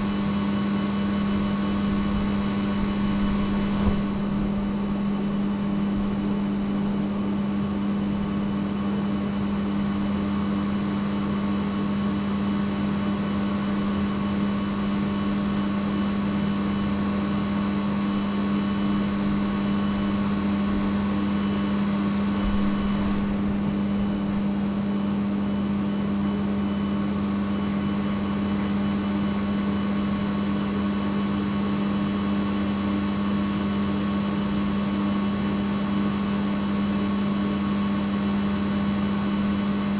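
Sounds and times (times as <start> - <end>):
steady machine hum: 0.0 - 39.9.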